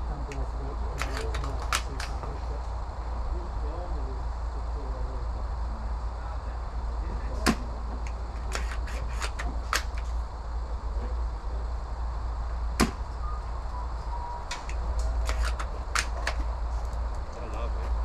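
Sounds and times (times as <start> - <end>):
low rumble: 0.0 - 18.0
gun mechanism clicks: 1.0 - 2.2, 8.5 - 10.1, 14.5 - 17.2.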